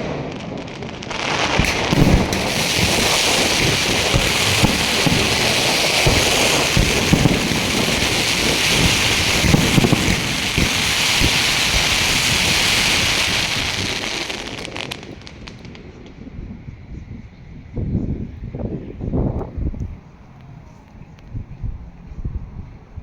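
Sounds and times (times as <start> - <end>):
fireworks crackling: 0.0 - 16.0
fireworks low booms: 0.0 - 16.6.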